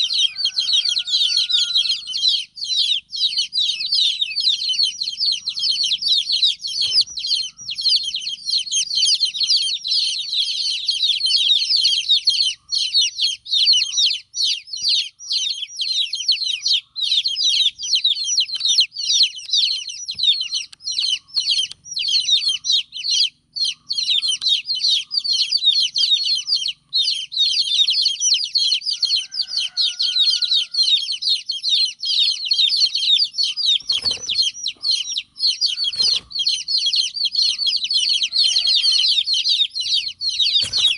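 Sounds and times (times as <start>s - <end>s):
baby chicks peeping: 0.0s - 40.9s.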